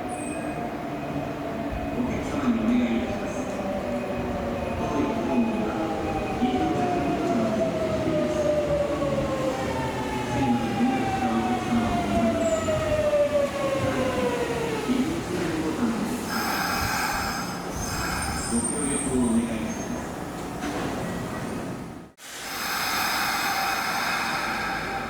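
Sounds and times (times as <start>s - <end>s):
train brakes squealing: 16.3s - 20.2s.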